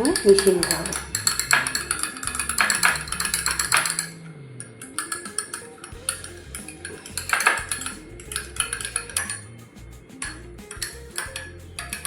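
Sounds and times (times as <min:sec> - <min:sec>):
utensil beating eggs in bowl: 0:00.0 - 0:04.1.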